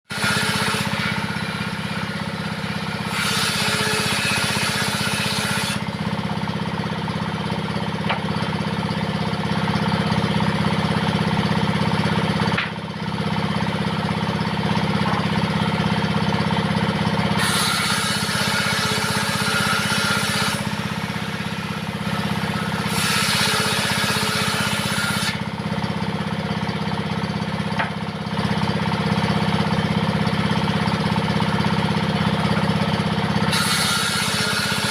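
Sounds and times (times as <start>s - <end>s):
saw blade cutting wood: 0.0s - 6.1s, 17.2s - 25.6s, 33.3s - 34.9s
diesel engine running: 0.4s - 3.1s, 5.8s - 17.5s, 18.1s - 22.9s, 23.5s - 33.6s.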